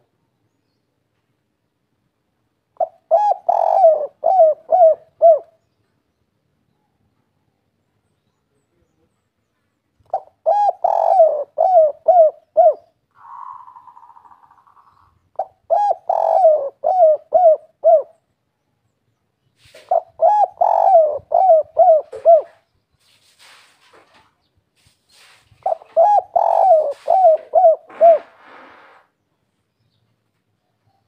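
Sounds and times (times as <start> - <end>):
dove cooing: 2.8 - 5.6, 10.1 - 18.2, 19.6 - 22.7, 25.6 - 29.0.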